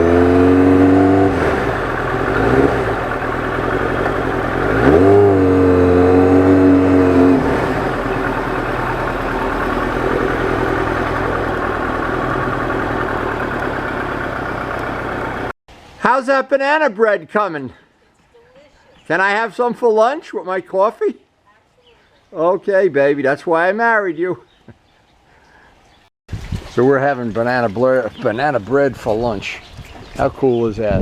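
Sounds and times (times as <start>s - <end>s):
motorcycle engine revving: 0.0s - 15.6s.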